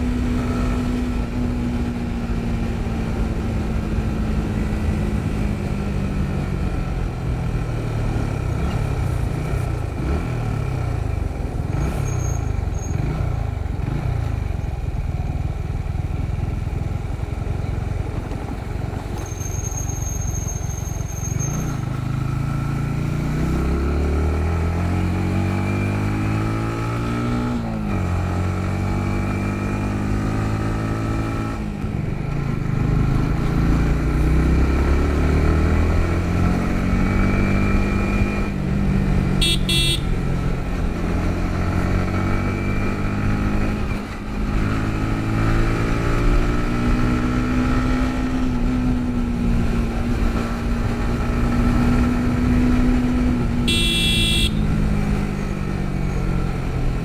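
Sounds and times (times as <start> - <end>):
motorcycle engine revving: 0.0 - 57.0
horn toot: 39.4 - 40.3, 53.6 - 54.8.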